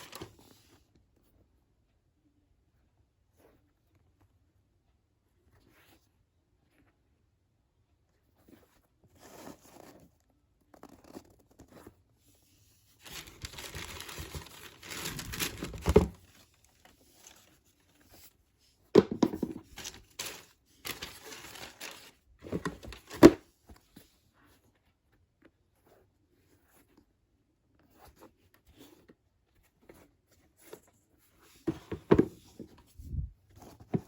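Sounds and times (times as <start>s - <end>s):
packing paper crinkling and tearing: 0.0s - 0.3s, 13.0s - 17.6s, 19.8s - 23.4s.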